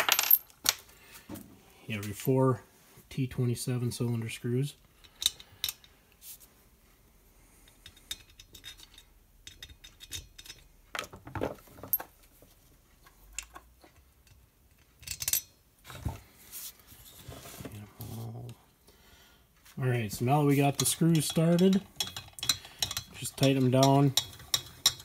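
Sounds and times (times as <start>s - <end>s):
screws and screwdriver clinking: 7.8s - 11.1s, 20.7s - 25.0s.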